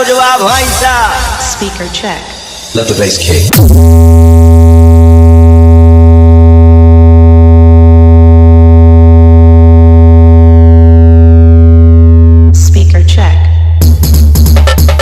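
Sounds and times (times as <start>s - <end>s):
loud synthesized bass note: 3.5s - 15.0s.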